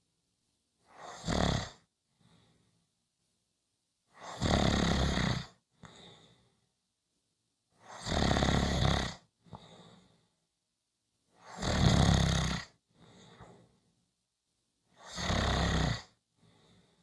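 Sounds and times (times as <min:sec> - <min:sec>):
person snoring: 0:04.2 - 0:05.5, 0:15.1 - 0:16.1.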